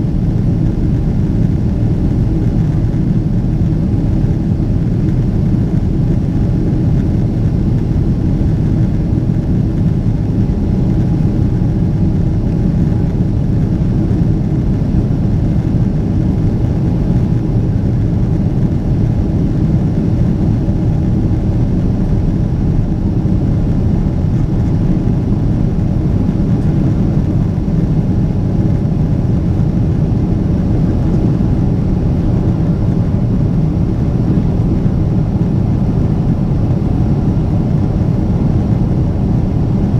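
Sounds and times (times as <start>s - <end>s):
faint hum: 0.0s - 39.9s
jet engine cabin rumble: 0.0s - 39.9s.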